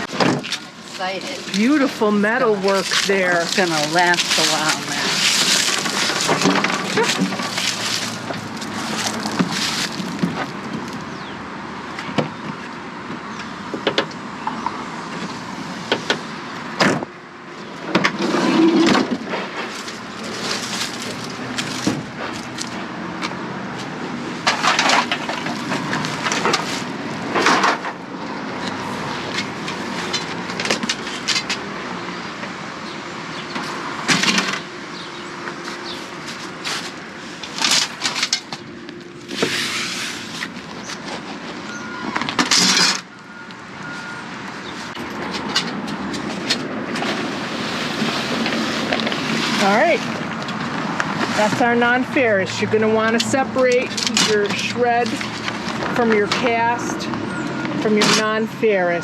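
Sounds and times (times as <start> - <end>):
scrap metal clattering and crashing: 2.7 - 10.5, 18.0 - 22.6, 24.4 - 28.0.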